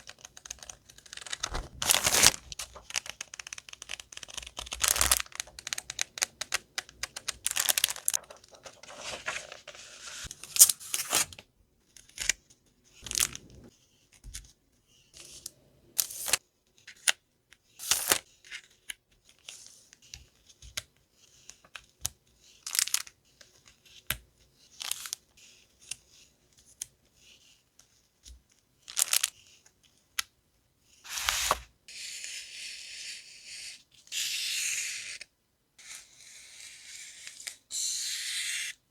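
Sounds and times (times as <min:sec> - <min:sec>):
packaging crinkling and rustling: 0:00.8 - 0:06.3, 0:07.1 - 0:10.3
paper tearing: 0:01.1 - 0:02.9.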